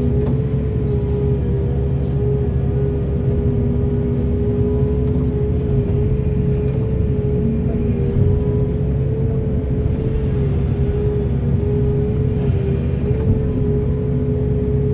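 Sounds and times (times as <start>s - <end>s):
excavator engine rumbling: 0.0s - 14.9s
hydraulic hissing spurts: 4.1s - 13.6s.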